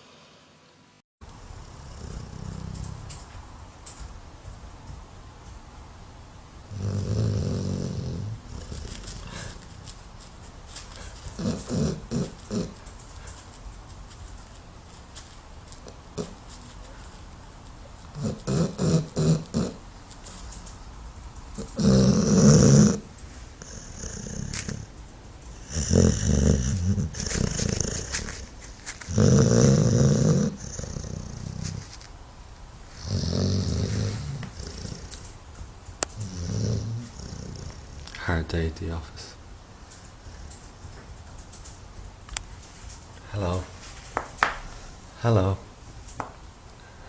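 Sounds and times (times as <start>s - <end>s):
dog snoring: 1.5s - 3.2s, 6.7s - 9.8s, 11.0s - 12.8s, 18.1s - 19.9s, 21.6s - 24.9s, 25.5s - 31.9s, 32.9s - 35.3s, 36.2s - 38.2s.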